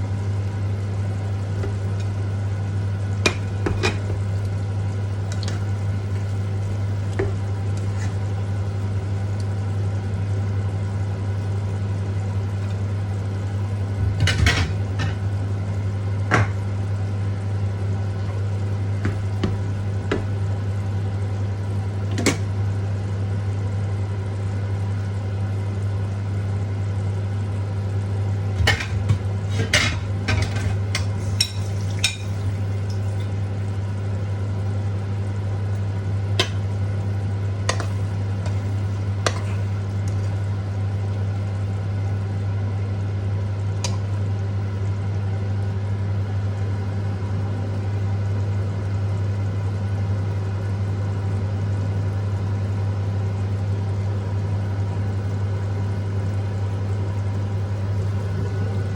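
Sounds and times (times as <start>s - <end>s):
steady low hum: 0.0s - 58.9s
food sizzling in a frying pan: 27.7s - 34.7s.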